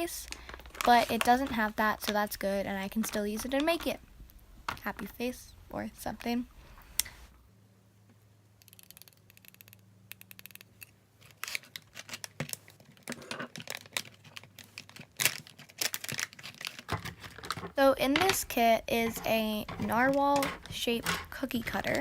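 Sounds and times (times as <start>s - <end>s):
packaging crinkling and rustling: 0.0s - 3.9s, 11.2s - 22.0s.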